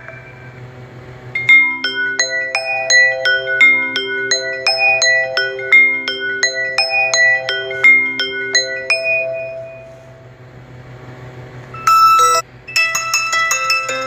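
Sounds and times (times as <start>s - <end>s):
phone ringtones playing: 1.4s - 10.2s, 11.8s - 14.0s
short chime: 1.4s - 10.2s.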